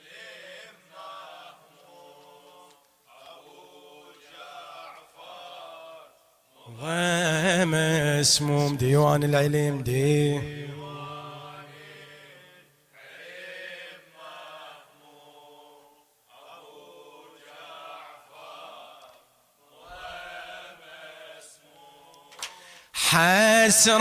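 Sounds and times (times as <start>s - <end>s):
male voices chanting in unison: 0.0s - 24.0s
person reciting: 6.6s - 12.4s, 19.8s - 24.0s.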